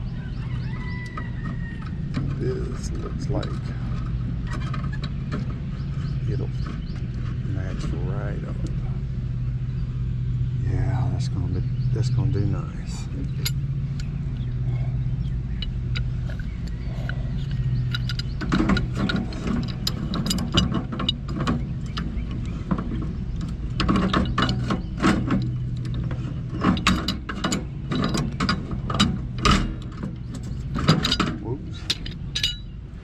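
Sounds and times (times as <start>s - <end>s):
steady low hum: 0.0s - 33.0s
metallic ratcheting clicks: 15.5s - 22.5s, 23.5s - 32.7s.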